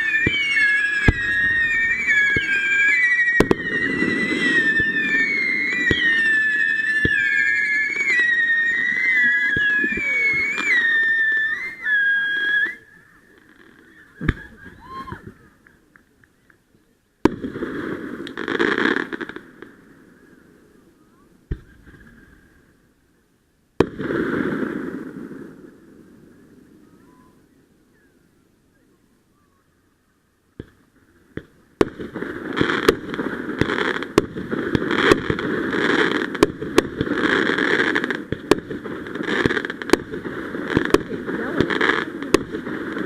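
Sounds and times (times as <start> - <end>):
firework bangs: 0.0 - 12.8, 13.4 - 15.3, 17.2 - 20.0, 21.5 - 22.6, 23.8 - 26.1, 30.6 - 43.0
crackling hiss: 0.0 - 43.0.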